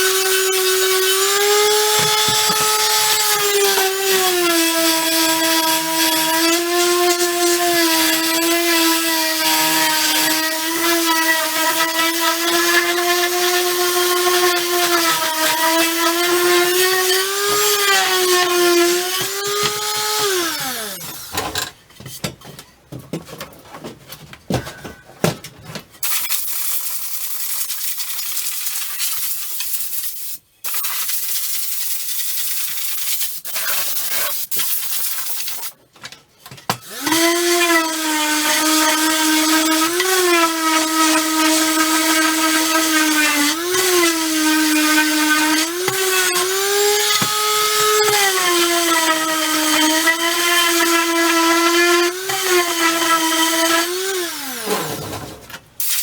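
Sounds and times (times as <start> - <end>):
electric sander on wood: 0.0 - 21.2, 36.9 - 55.0.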